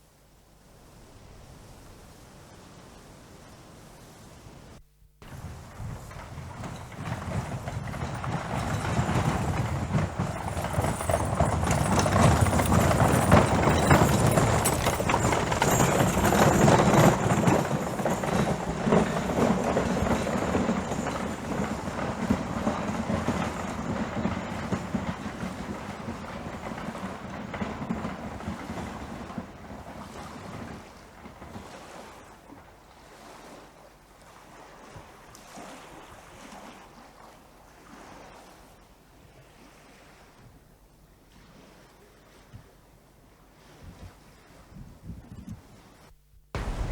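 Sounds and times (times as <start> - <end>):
horses' hooves beating: 5.2 - 32.0, 46.6 - 46.9.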